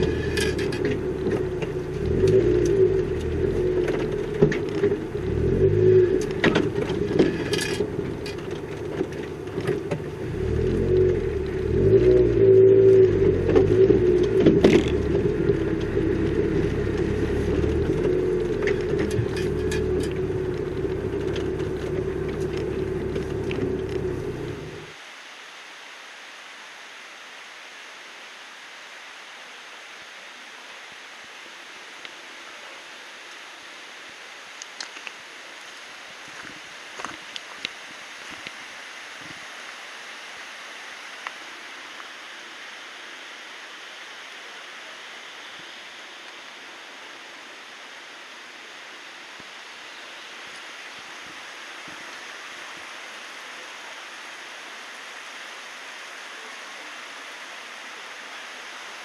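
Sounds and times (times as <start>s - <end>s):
car engine running: 0.0s - 25.0s
steady rushing hiss: 0.0s - 59.0s.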